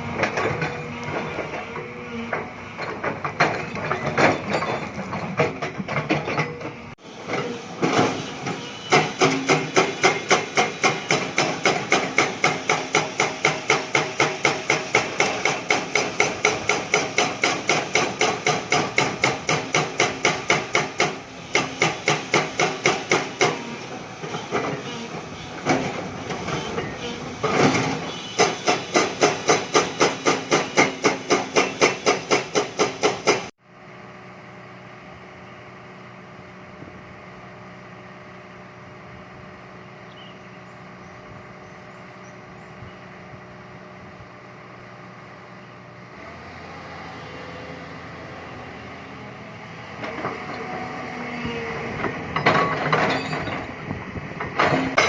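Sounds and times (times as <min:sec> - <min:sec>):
excavator engine running: 0:00.0 - 0:55.0
metallic hammering blows: 0:07.8 - 0:33.5.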